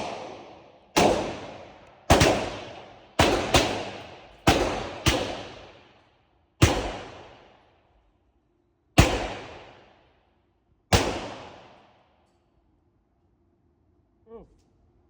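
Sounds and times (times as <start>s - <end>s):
pistol shots echoing: 0.0s - 6.0s, 6.6s - 7.6s, 9.0s - 10.0s, 10.9s - 12.0s.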